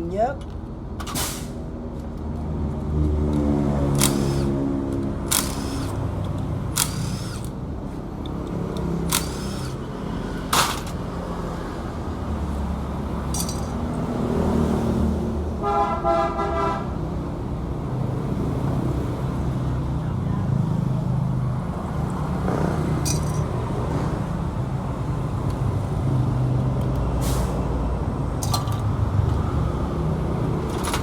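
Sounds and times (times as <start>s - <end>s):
sharp clicks: 4.0s - 4.5s, 5.3s - 7.6s, 8.2s - 9.5s
vehicle horn: 15.6s - 17.0s.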